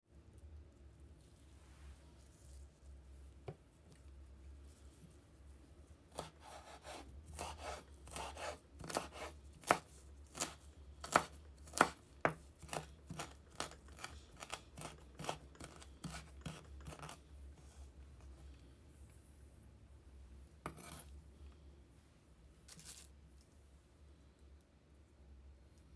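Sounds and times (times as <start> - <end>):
knife cutting herbs: 6.1 - 17.2.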